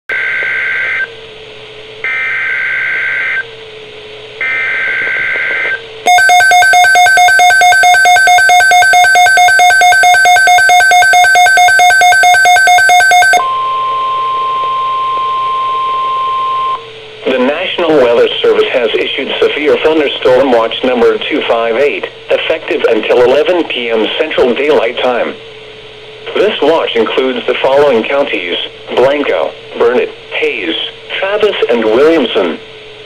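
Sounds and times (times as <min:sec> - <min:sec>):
pulsing alarm tone: 0:04.4 - 0:16.9
steady attention tone: 0:04.4 - 0:20.5.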